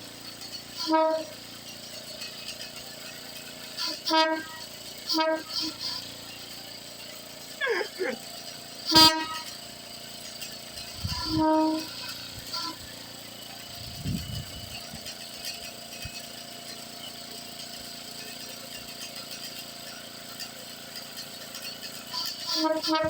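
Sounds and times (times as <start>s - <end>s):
train air horn blasts: 0.7s - 2.2s, 3.8s - 6.1s, 8.8s - 9.6s, 10.8s - 12.8s, 22.1s - 23.0s.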